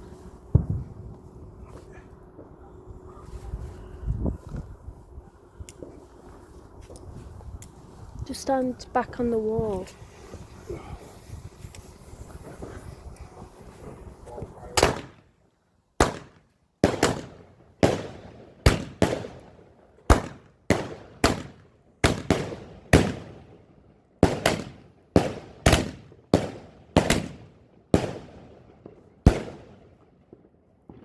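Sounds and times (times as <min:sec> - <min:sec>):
fireworks banging: 0:00.0 - 0:03.1, 0:11.2 - 0:15.2, 0:16.0 - 0:19.5.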